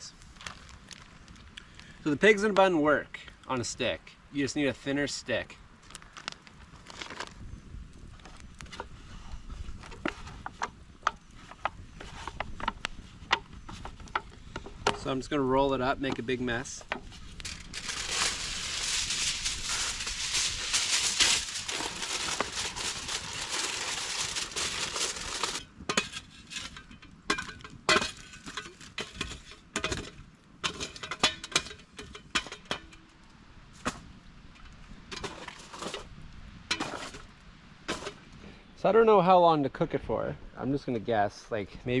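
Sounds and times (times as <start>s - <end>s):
aluminium foil crinkling: 0.1s - 1.4s, 5.9s - 7.4s, 17.1s - 25.7s.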